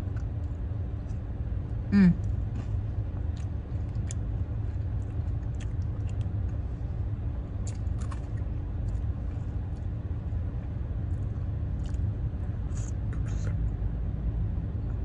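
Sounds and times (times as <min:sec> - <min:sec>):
low rumble inside a car: 0:00.0 - 0:15.0
chewing crunchy granola: 0:02.2 - 0:10.0, 0:10.6 - 0:12.1.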